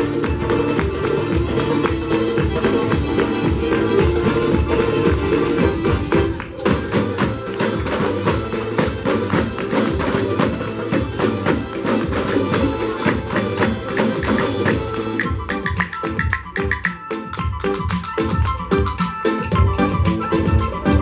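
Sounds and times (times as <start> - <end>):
fast hand percussion: 0.0 - 21.0
jingling tambourine strikes: 6.6 - 20.2.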